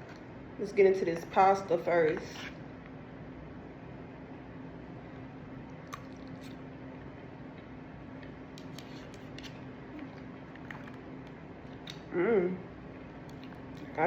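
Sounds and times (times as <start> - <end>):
low room hum: 0.0 - 14.0
soft chewing: 5.6 - 12.1, 13.0 - 14.0.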